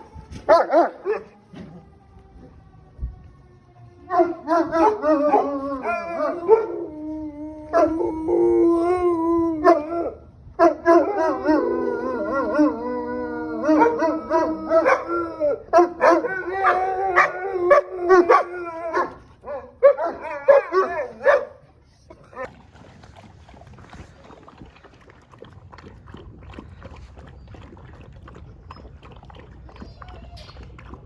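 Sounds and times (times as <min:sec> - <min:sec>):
dogs howling: 0:00.0 - 0:03.4, 0:04.0 - 0:21.5, 0:29.3 - 0:31.0.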